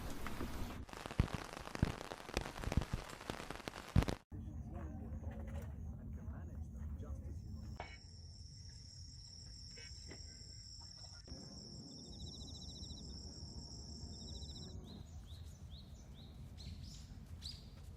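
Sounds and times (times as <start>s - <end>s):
crickets trilling: 7.6s - 14.8s.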